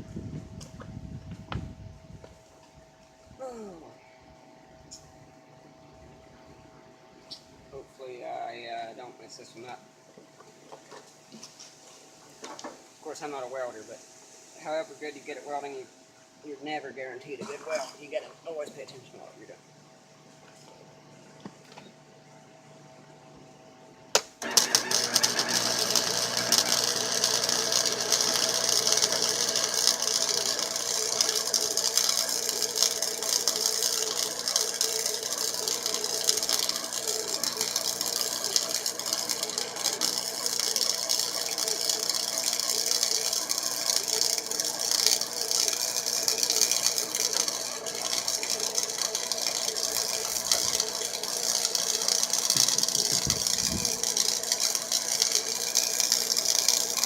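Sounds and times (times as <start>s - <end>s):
welding arc crackling: 24.2s - 57.0s.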